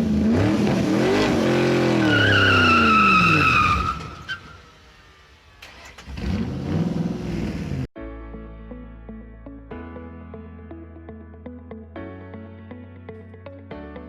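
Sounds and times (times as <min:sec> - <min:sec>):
car engine revving: 0:00.0 - 0:07.9
tire squeal: 0:00.6 - 0:07.7.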